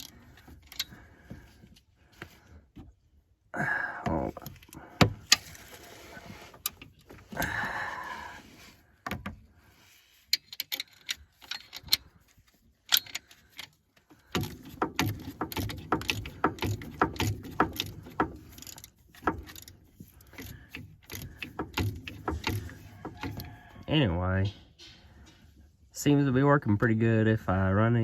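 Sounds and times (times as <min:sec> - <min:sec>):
ratchet clicking: 0:14.3 - 0:23.4.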